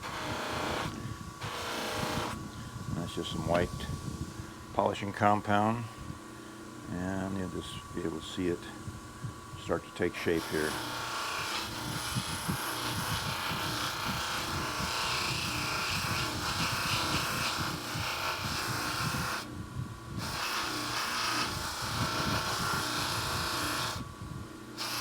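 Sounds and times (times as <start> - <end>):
buffing wheel motor whir: 0.0 - 4.7, 10.2 - 24.1.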